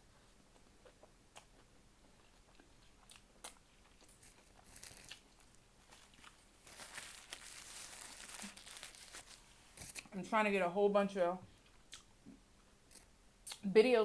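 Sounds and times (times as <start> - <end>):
person chewing and crunching food: 0.1 - 10.0, 11.6 - 12.1.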